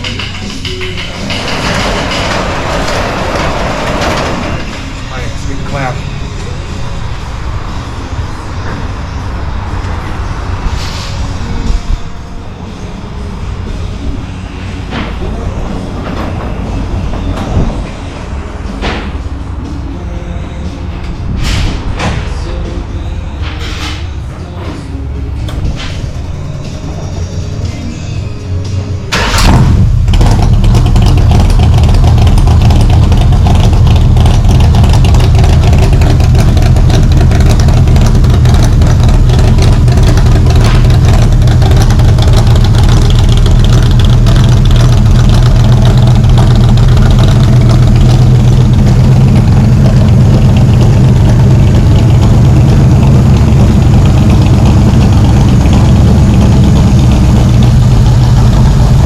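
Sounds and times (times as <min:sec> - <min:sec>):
car engine idling loudly: 0:29.1 - 0:59.0.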